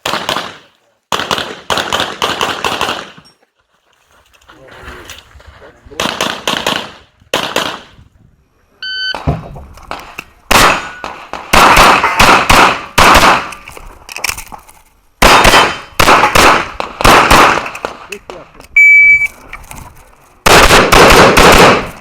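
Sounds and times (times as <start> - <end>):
pistol shots: 0.0 - 3.2, 6.0 - 8.0, 9.9 - 13.6, 15.2 - 18.1, 20.4 - 22.0.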